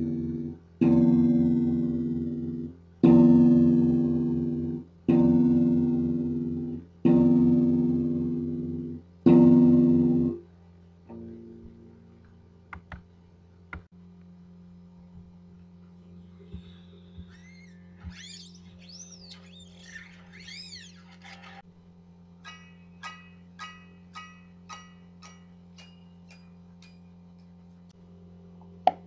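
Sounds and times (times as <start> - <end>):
eerie electric guitar notes: 0.0 - 12.6
amplifier hum: 0.0 - 20.9.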